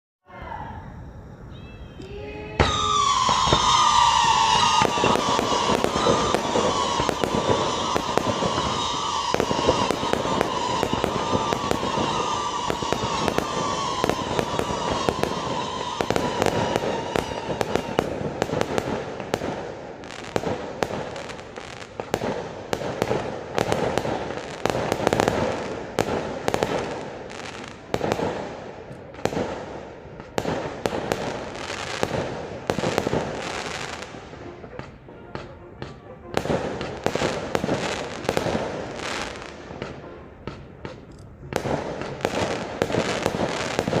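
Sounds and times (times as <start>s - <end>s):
fireworks whistling: 0.3s - 44.0s
fireworks sharp bangs: 2.5s - 44.0s
fireworks crackling: 2.6s - 44.0s.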